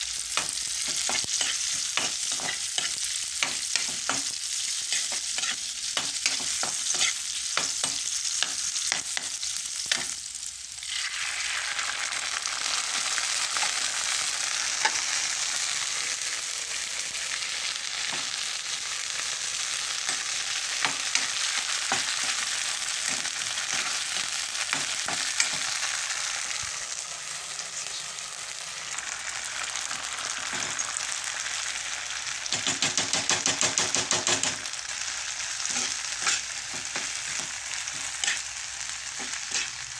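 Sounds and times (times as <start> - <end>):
food sizzling in a hot pan: 0.0 - 39.9
utensil scraping a pan: 4.9 - 7.2, 35.7 - 38.5, 39.2 - 39.8.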